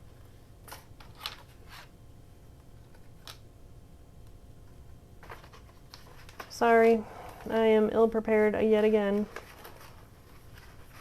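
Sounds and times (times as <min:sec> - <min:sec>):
faint steady hum: 0:00.0 - 0:11.0
paper rustling: 0:05.2 - 0:06.6, 0:09.0 - 0:11.0.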